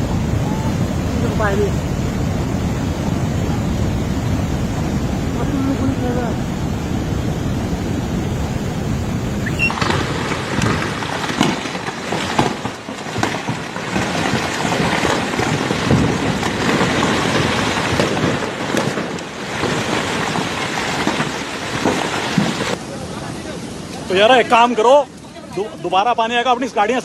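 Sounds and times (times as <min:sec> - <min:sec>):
rushing floodwater: 0:00.0 - 0:27.0.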